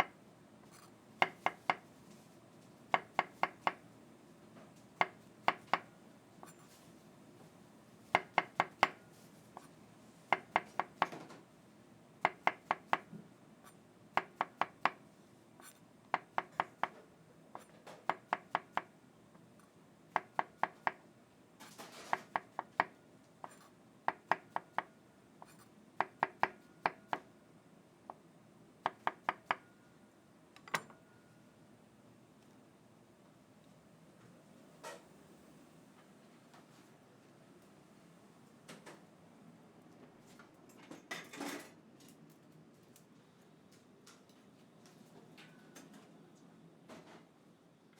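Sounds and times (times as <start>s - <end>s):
knife chopping: 12.2s - 13.1s.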